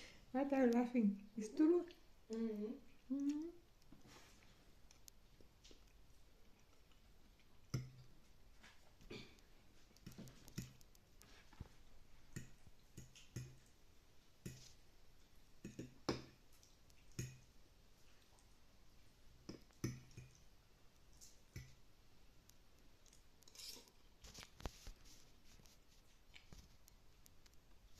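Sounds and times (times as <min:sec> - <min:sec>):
person chewing with mouth smacks: 0:02.8 - 0:11.7, 0:26.0 - 0:27.7.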